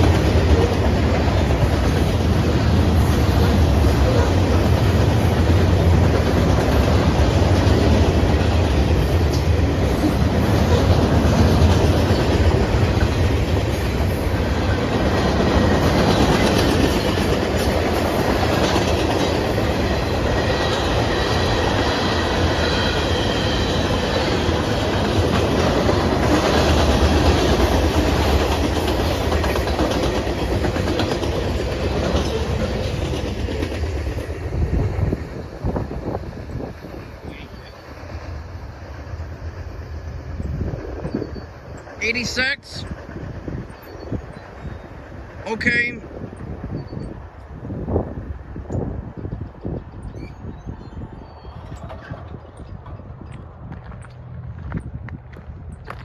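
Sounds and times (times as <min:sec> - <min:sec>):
train wheels clacking over rail joints: 0:00.0 - 0:37.1.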